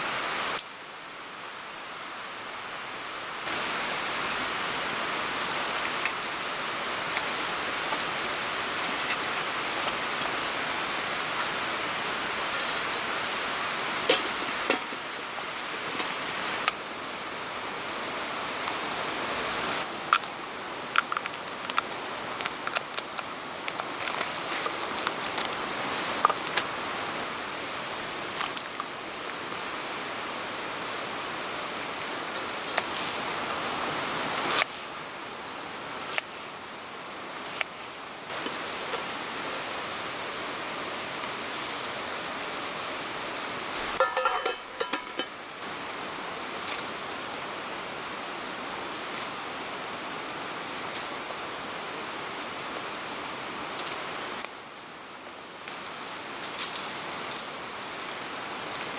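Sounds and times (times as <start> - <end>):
rain and running water: 0.0 - 58.9
sharp clicks and clinks: 44.0 - 45.3.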